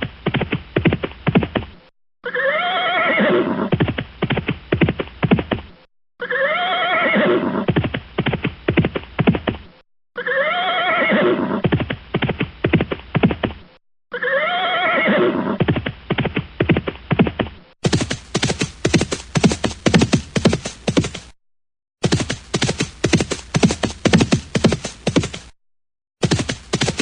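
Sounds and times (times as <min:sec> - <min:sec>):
horse whinnying: 0:02.2 - 0:03.8, 0:06.2 - 0:07.8, 0:10.2 - 0:11.8, 0:14.1 - 0:15.8
hoofbeats: 0:14.2 - 0:21.4, 0:22.0 - 0:25.6, 0:26.2 - 0:27.0.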